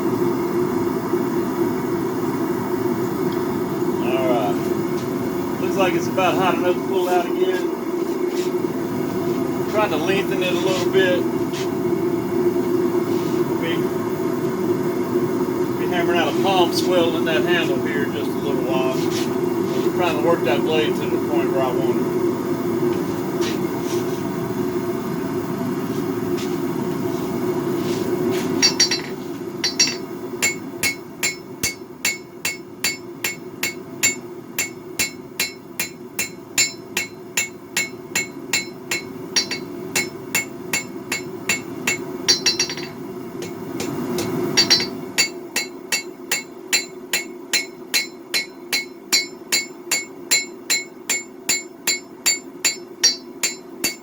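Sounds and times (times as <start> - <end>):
hammer striking steel on anvil: 28.6 - 54.0.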